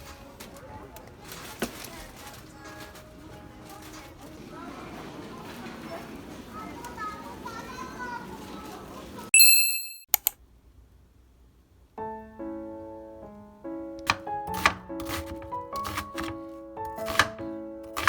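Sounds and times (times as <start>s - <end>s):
background music of held notes: 0.0s - 1.3s, 2.0s - 4.4s, 12.0s - 18.0s
bright bell-like ding: 9.4s - 10.1s
click: 10.1s - 10.4s.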